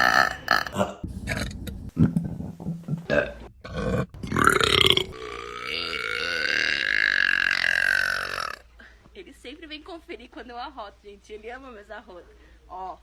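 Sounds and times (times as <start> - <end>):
woman burping: 0.0 - 1.6, 3.1 - 8.6.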